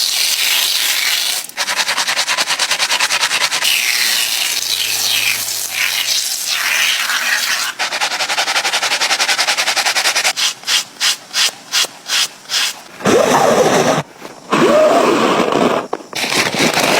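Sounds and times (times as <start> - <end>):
rubbing strokes on a sneaker: 0.5 - 5.9, 6.8 - 16.9
squeaky rub: 6.8 - 16.9.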